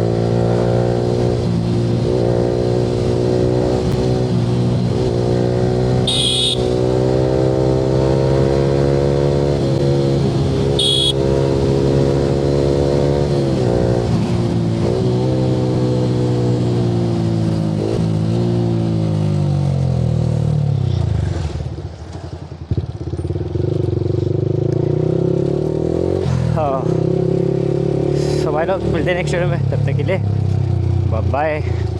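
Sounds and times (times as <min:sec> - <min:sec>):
motorcycle engine running: 0:05.8 - 0:08.0, 0:09.2 - 0:11.6
short high-pitched beeps: 0:06.1 - 0:06.7, 0:10.8 - 0:11.2.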